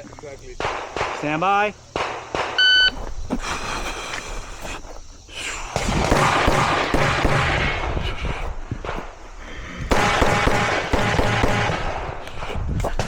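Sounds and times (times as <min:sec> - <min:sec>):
pistol shots in rapid bursts: 0:00.6 - 0:02.6, 0:05.8 - 0:08.0, 0:09.9 - 0:12.2.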